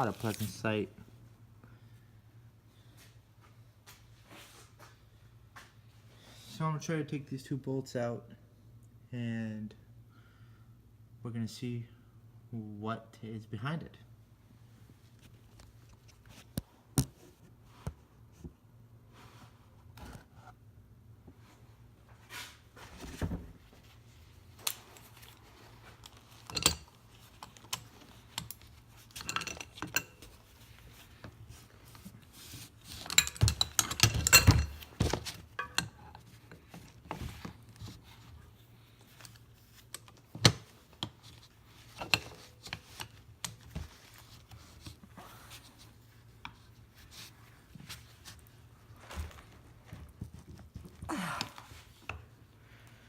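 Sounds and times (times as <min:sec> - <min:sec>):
metal tools clinking on casing: 0:26.1 - 0:30.4, 0:33.0 - 0:34.8.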